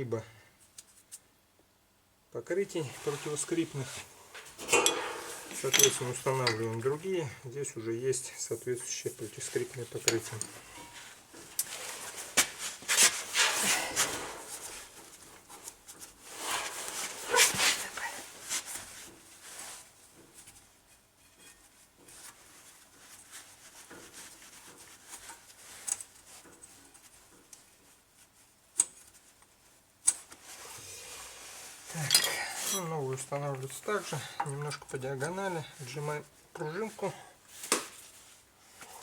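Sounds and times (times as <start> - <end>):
metal scraping on metal: 4.3 - 7.0.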